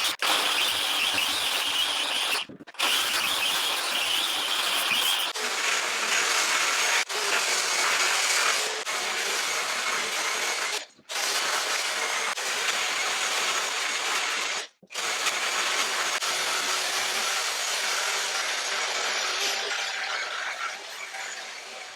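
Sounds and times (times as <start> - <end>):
angle grinder sanding wood: 0.0 - 5.4.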